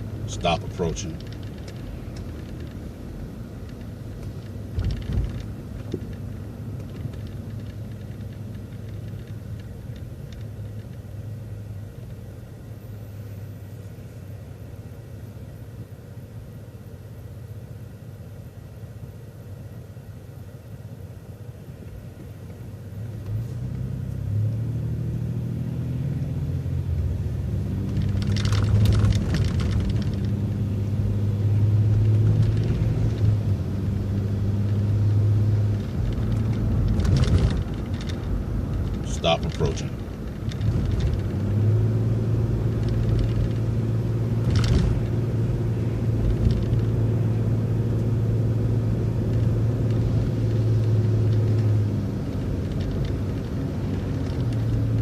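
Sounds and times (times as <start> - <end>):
bus engine rumbling and accelerating: 0.0 - 55.0.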